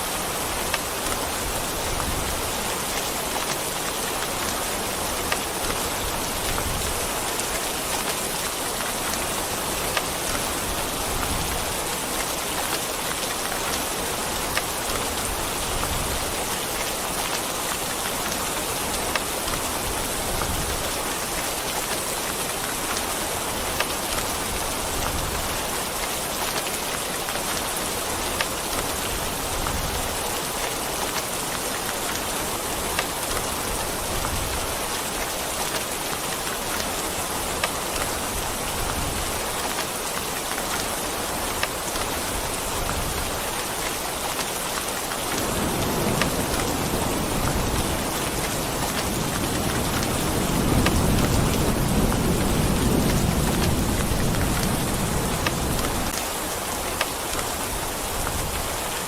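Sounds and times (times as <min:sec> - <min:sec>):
heavy rain falling: 0:00.0 - 0:59.0
low rumble of thunder: 0:45.4 - 0:56.1.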